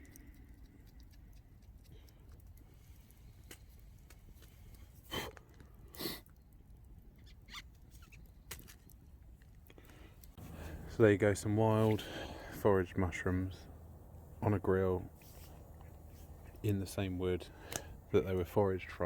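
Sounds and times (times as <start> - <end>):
low steady rumble: 10.3 - 19.0
faint clicks: 17.4 - 18.1.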